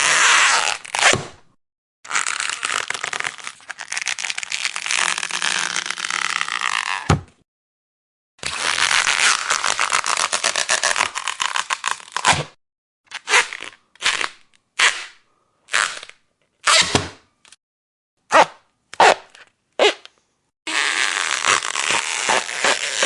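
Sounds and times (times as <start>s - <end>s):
rubber stretching and creaking: 2.1s - 7.4s, 20.7s - 23.0s.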